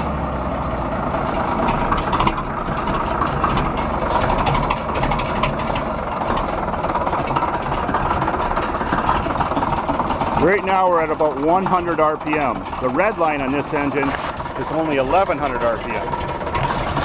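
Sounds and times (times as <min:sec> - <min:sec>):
diesel bulldozer idling low: 0:00.0 - 0:17.0.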